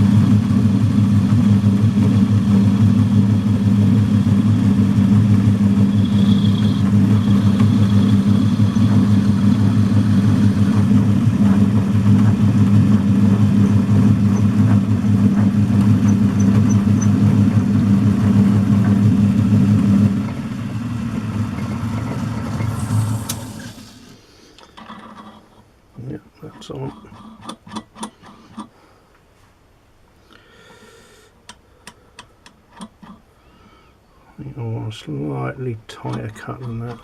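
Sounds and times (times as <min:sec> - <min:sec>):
metal lathe motor humming: 0:00.0 - 0:24.0, 0:36.0 - 0:37.0.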